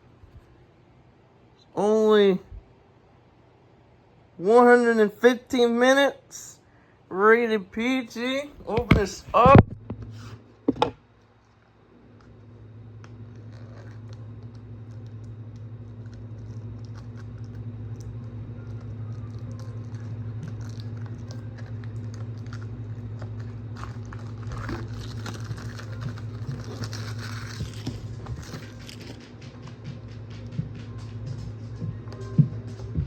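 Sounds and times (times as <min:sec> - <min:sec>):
low hum: 0:08.0 - 0:33.0
plastic wrap crinkling: 0:13.2 - 0:29.6.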